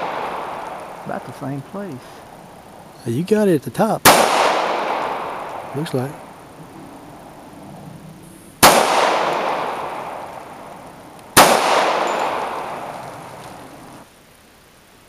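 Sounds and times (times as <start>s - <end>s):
gunshots with echo: 0.0s - 1.5s, 4.0s - 6.4s, 8.6s - 10.7s, 11.3s - 14.0s.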